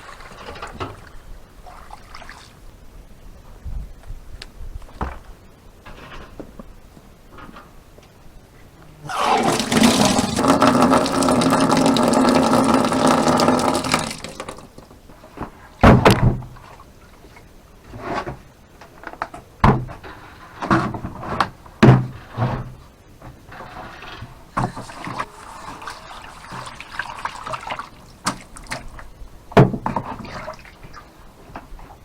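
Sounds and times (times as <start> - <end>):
water pouring into container: 9.1 - 14.8, 24.9 - 28.9
knocks and thumps: 19.6 - 20.1.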